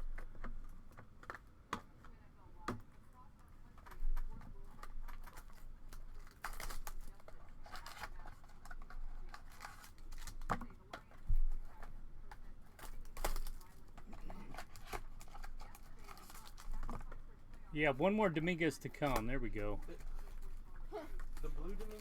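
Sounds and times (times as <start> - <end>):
wrappers tearing and crinkling: 5.2 - 10.5, 12.8 - 17.1, 19.1 - 22.0.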